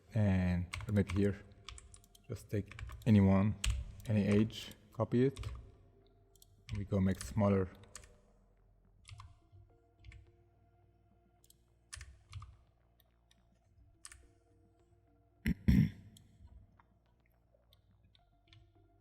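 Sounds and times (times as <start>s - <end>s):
keyboard and mouse clicks: 0.7s - 5.6s, 6.3s - 8.2s.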